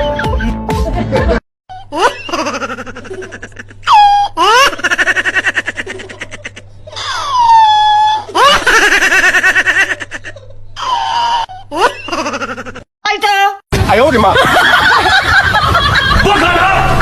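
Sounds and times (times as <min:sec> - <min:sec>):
person laughing with squeals: 0:01.7 - 0:12.9.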